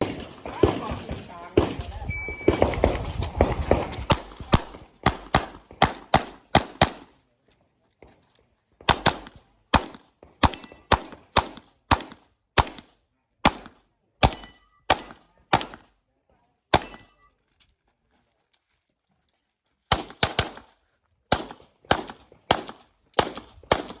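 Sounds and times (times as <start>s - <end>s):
handgun shots: 8.9s - 15.8s.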